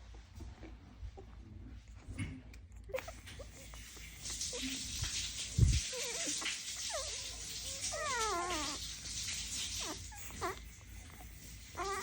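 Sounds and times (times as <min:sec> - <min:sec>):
puppies whining: 0:02.8 - 0:04.9, 0:05.6 - 0:12.0.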